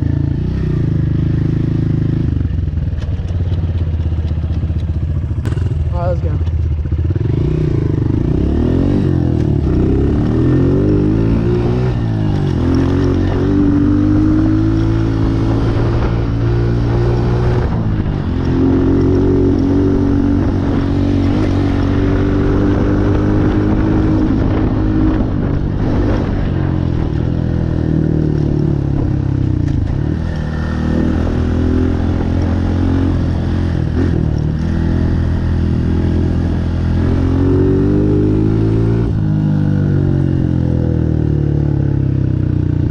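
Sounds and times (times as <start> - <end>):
dirt bike engine revving: 5.4 - 39.4.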